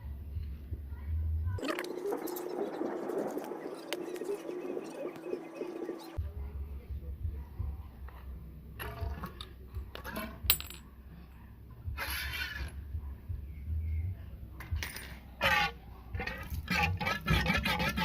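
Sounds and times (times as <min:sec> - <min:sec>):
metal parts clinking and rattling: 0:09.9 - 0:10.8.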